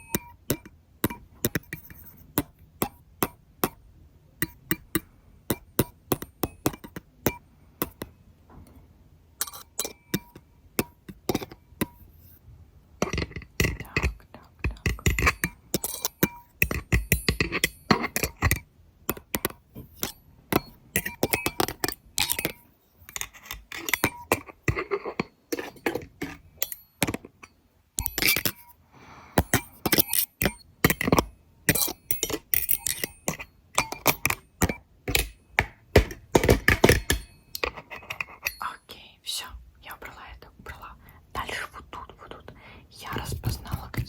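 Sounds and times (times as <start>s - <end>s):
small scraping sounds: 1.4s - 2.4s, 21.6s - 28.8s, 37.5s - 38.8s.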